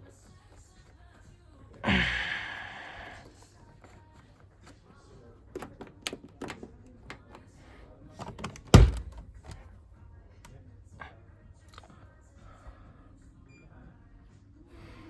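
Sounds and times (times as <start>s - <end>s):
washing machine door clicks and knocks: 8.3s - 9.2s
loud door thunk: 8.6s - 9.2s.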